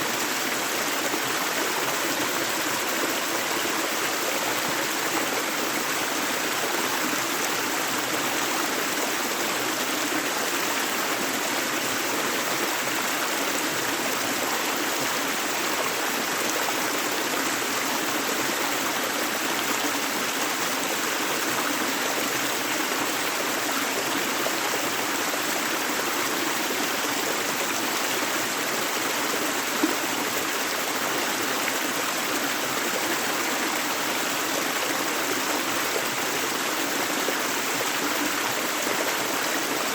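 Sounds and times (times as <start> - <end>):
river flowing: 0.0 - 39.9.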